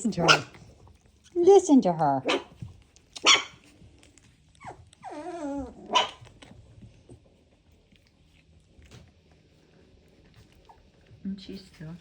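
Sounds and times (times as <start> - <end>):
puppy barking: 0.2 - 0.6, 2.2 - 2.6, 3.2 - 3.7, 5.6 - 6.3
puppy yelping: 0.2 - 0.6, 2.2 - 3.7, 4.6 - 6.3
puppy whining: 4.5 - 6.6.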